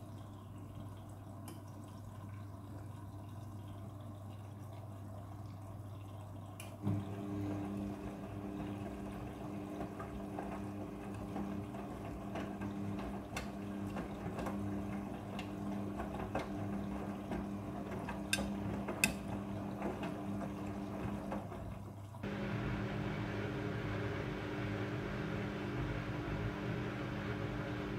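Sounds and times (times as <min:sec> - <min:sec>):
washing machine humming: 0:00.0 - 0:27.9.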